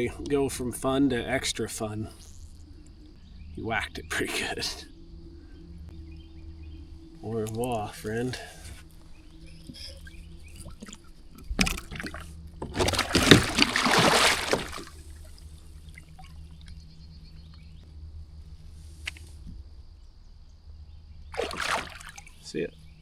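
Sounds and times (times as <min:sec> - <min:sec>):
water splashing beside a kayak: 0:07.2 - 0:17.4, 0:21.3 - 0:22.8.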